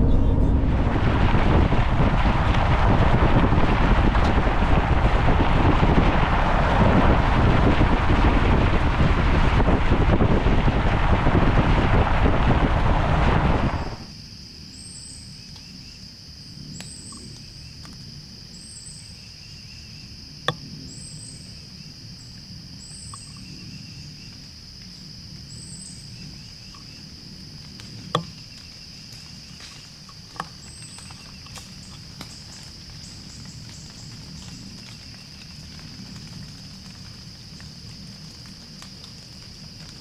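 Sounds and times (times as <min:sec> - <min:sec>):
cricket trill: 0:14.0 - 0:40.0
high insect chirp: 0:14.0 - 0:40.0.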